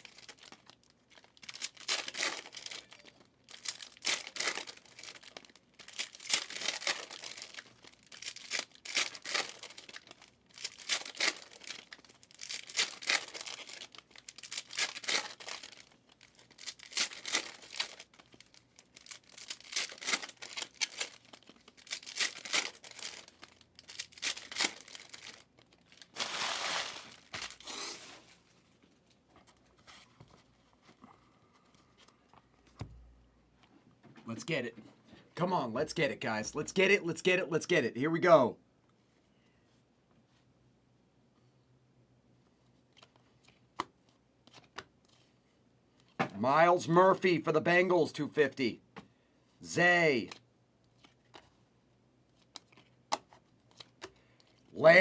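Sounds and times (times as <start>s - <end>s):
card pack wrappers tearing: 0.0s - 28.2s.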